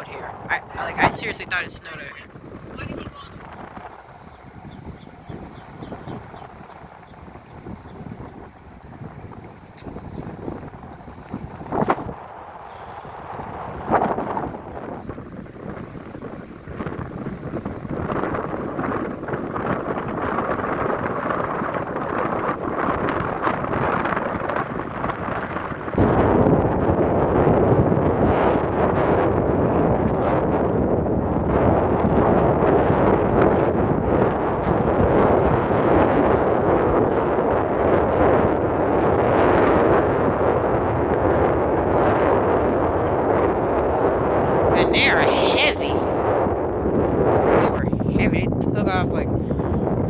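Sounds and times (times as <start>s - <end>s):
jet engines roaring: 0.0s - 6.2s
wind buffeting microphone: 0.0s - 50.0s.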